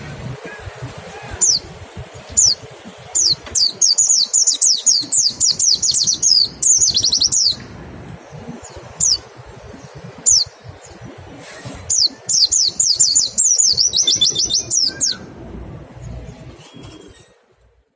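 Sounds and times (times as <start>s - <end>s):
bird high wit notes: 11.9s - 15.3s.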